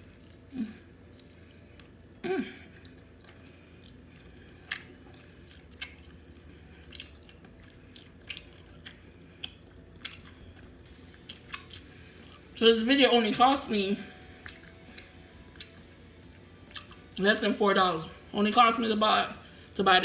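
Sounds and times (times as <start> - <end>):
wet chewing smacks: 0.0 - 12.5, 14.4 - 15.9, 16.7 - 17.1.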